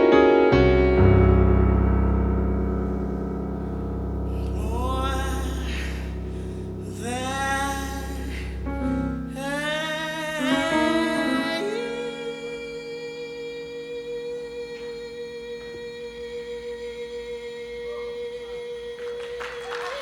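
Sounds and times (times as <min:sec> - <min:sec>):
piano and double bass chord: 0:00.0 - 0:13.0
person singing solo: 0:06.9 - 0:20.0.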